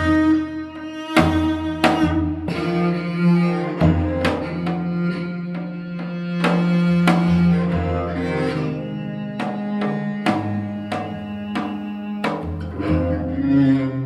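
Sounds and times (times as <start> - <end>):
bowed string low notes: 0.0 - 14.0
sharp drum strokes: 3.7 - 13.3.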